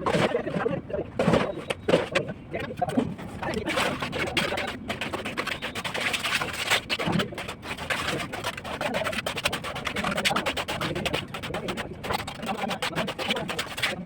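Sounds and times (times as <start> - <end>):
bird calls: 5.4 - 6.0.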